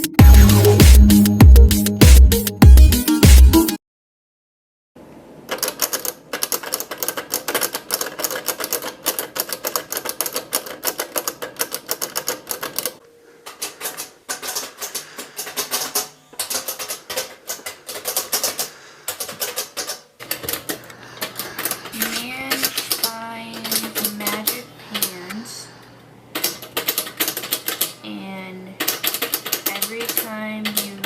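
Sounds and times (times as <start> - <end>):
typewriter keys clicking: 5.5 - 13.0, 13.6 - 25.1, 26.4 - 28.0, 28.8 - 31.0.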